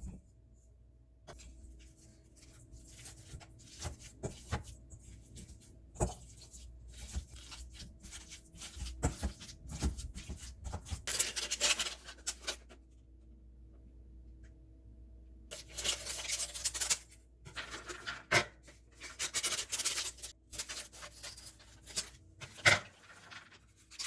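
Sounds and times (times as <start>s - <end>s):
faint steady hum: 12.3s - 17.6s.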